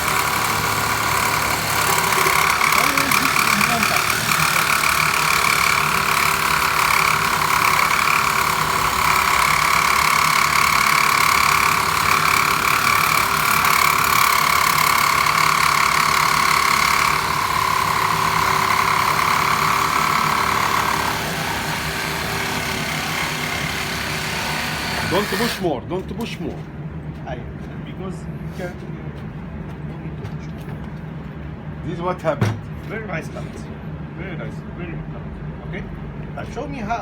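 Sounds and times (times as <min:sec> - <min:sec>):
power cutter motor whine: 0:00.0 - 0:25.6.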